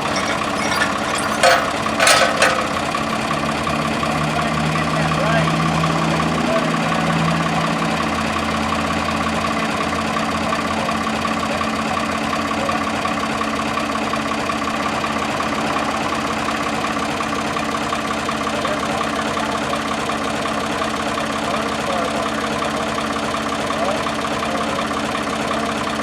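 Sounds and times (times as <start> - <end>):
engine running steadily: 0.0 - 26.0.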